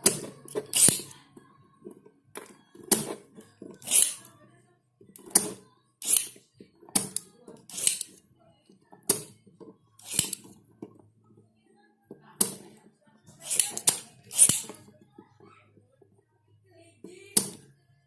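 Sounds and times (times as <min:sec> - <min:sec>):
hand tools clicking: 0:00.0 - 0:01.1, 0:03.8 - 0:04.3, 0:05.2 - 0:06.4, 0:07.0 - 0:08.2, 0:10.0 - 0:10.5, 0:13.4 - 0:14.8
tool scraping strokes: 0:00.5 - 0:01.1, 0:03.8 - 0:04.3, 0:06.0 - 0:06.4, 0:07.7 - 0:08.1, 0:10.0 - 0:10.4, 0:13.4 - 0:14.8.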